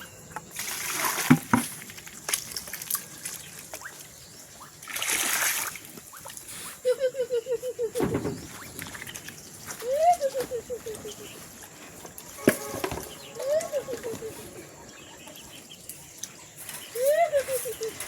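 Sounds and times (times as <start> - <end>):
water splashing and sloshing: 0.3 - 6.6, 8.0 - 18.0
poultry calling: 12.4 - 15.8.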